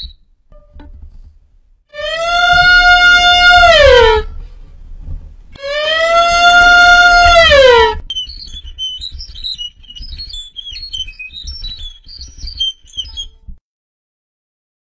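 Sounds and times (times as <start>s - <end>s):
animal long call: 5.6s - 8.0s
quick high-pitched chirps: 8.1s - 13.4s.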